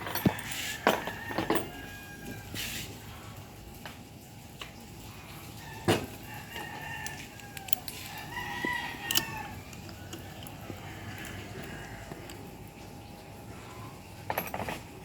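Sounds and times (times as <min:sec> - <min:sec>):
rooster crowing: 0:00.1 - 0:02.7, 0:05.6 - 0:12.5.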